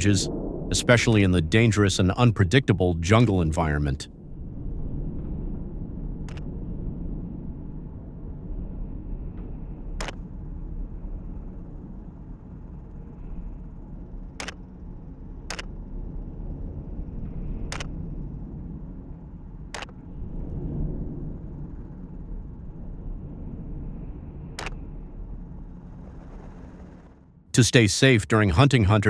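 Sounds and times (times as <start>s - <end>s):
helicopter rotor and engine rumble: 0.0s - 29.0s
sharp cracks: 10.0s - 10.3s, 14.4s - 14.7s, 15.5s - 15.8s, 19.8s - 20.0s, 24.6s - 24.9s.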